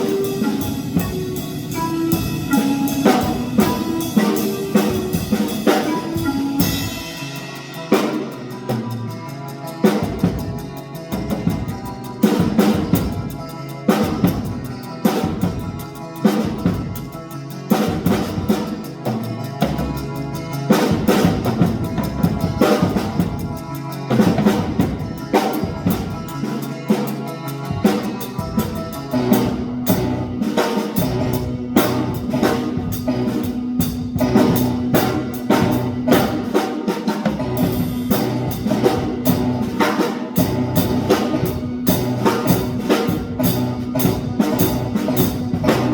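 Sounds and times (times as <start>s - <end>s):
held note: 0.0s - 9.3s
drum kit playing: 0.0s - 45.9s
steady pitched tones: 0.0s - 45.9s.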